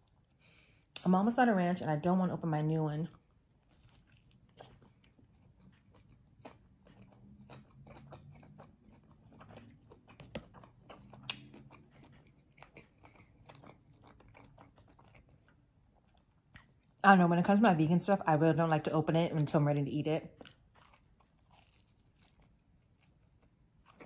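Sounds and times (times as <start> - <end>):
chewing crunchy food: 3.0 - 17.0, 20.2 - 24.0.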